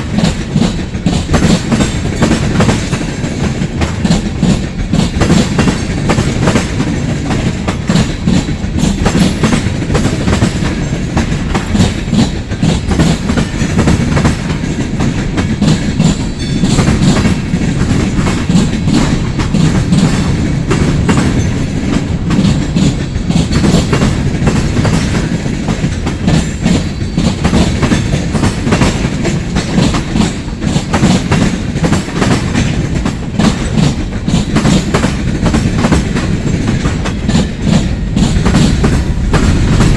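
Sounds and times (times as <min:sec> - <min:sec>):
freight train rumbling past: 0:00.0 - 0:39.9
wheels clicking over rail joints: 0:00.0 - 0:39.9.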